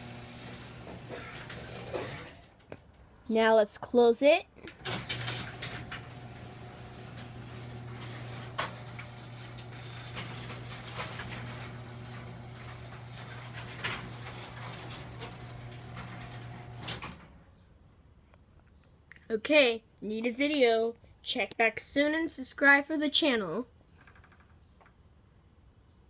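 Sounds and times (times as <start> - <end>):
garage door opener motor hum: 0.0 - 2.7, 4.7 - 17.5.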